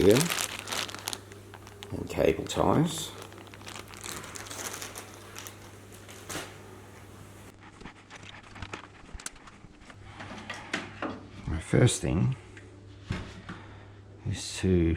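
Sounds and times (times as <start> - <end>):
plastic bags crinkling: 0.0 - 7.4
steady low hum: 0.0 - 7.6.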